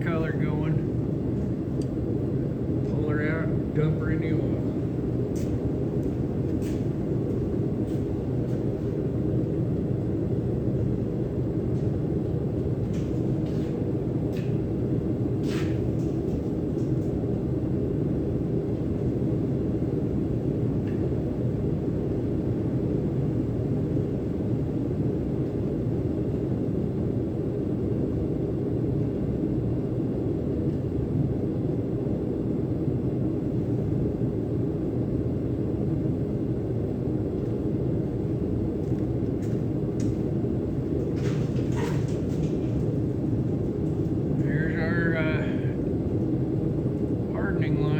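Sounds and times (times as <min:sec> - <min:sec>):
gas burner flame rushing: 0:00.0 - 0:26.2, 0:38.2 - 0:47.9.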